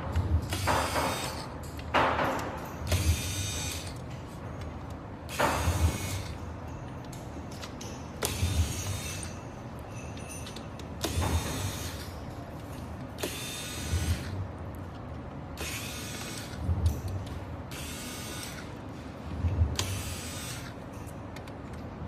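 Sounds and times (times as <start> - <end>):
small motor whirring: 2.9 - 4.0, 5.3 - 6.4, 13.2 - 14.4, 15.6 - 16.8, 17.7 - 18.7, 19.8 - 20.8.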